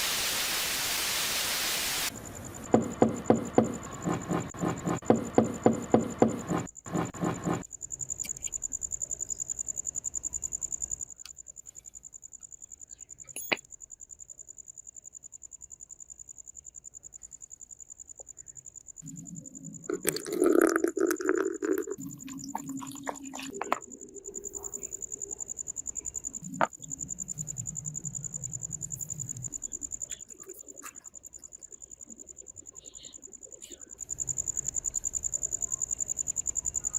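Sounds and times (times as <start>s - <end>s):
crickets chirring: 2.1s - 36.9s
evenly spaced knocks: 2.7s - 7.6s.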